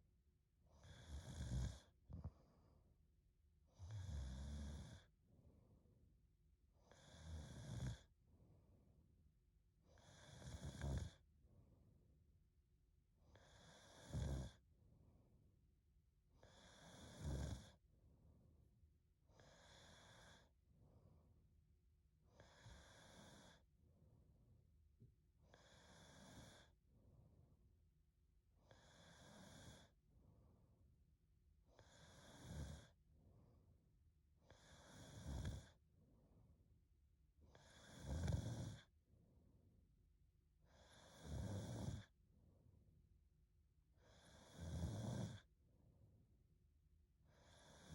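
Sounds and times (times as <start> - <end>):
woman snoring: 0.8 - 1.9, 3.8 - 5.1, 6.9 - 8.1, 10.0 - 11.2, 13.3 - 14.6, 16.4 - 17.8, 19.4 - 20.5, 22.4 - 23.6, 25.5 - 26.7, 28.7 - 29.9, 31.8 - 32.9, 34.5 - 35.8, 37.5 - 38.9, 40.7 - 42.1, 44.0 - 45.5, 47.3 - 47.9.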